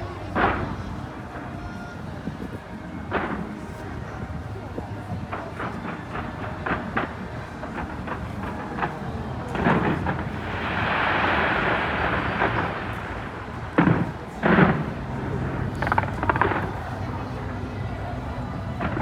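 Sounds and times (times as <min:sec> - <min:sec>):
fireworks exploding: 0:05.1 - 0:19.0
fireworks hissing: 0:05.5 - 0:19.0.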